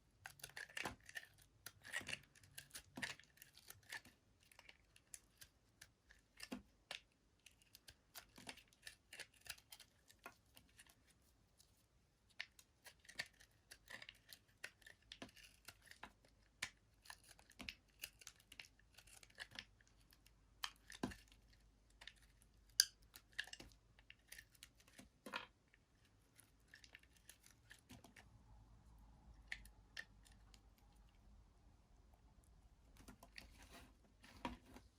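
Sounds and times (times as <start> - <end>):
soap being cut crackling: 0.3 - 4.7.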